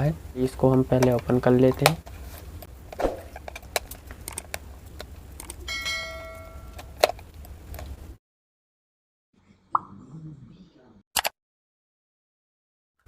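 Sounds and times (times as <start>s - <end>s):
short metallic ring: 5.7s - 6.8s.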